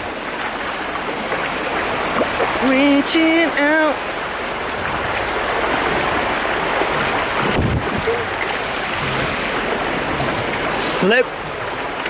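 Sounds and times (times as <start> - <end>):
creek water rushing: 0.0 - 12.0
low thump: 7.0 - 8.2.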